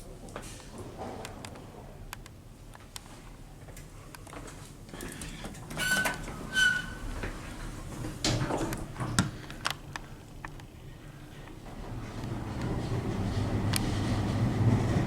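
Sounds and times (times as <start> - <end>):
lift doors sliding: 5.6 - 9.3, 11.6 - 15.0.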